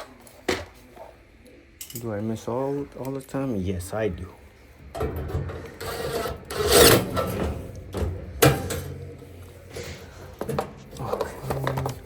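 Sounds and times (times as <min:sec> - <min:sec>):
scraping and rubbing of dryer parts: 0:04.8 - 0:12.0.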